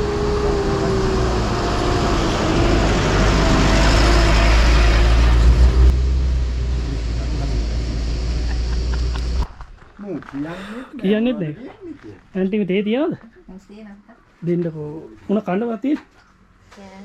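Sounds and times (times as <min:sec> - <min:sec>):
heavy low rumble: 0:00.0 - 0:10.7
road and wind noise: 0:00.0 - 0:13.6.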